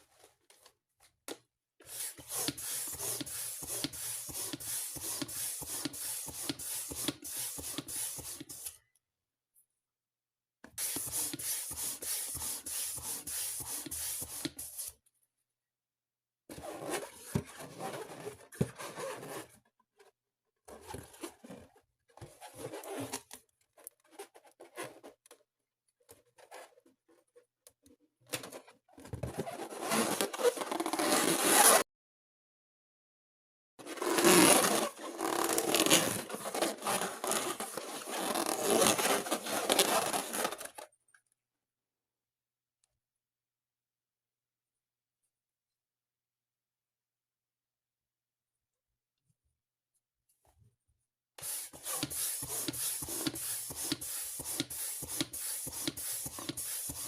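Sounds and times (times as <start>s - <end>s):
balloon rubber squeaking: 33.9s - 40.7s.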